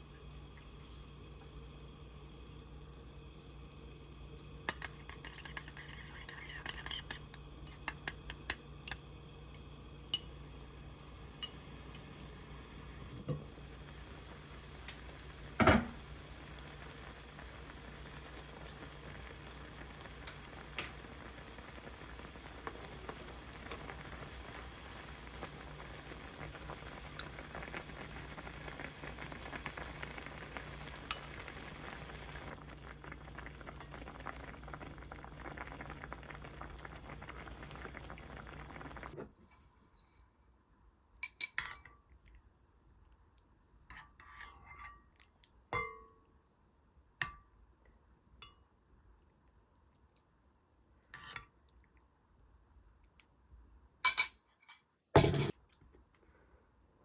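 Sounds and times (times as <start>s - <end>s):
food sizzling in a frying pan: 0.0s - 39.2s
utensil ticks stirring: 0.2s - 0.8s, 4.6s - 12.3s
dishes clinking: 4.7s - 9.0s, 15.6s - 16.0s, 54.1s - 55.6s.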